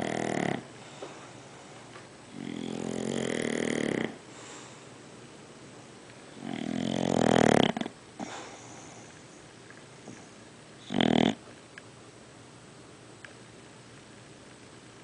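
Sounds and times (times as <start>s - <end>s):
dog snoring: 0.0s - 0.7s, 2.3s - 4.2s, 6.3s - 9.1s, 10.0s - 11.4s.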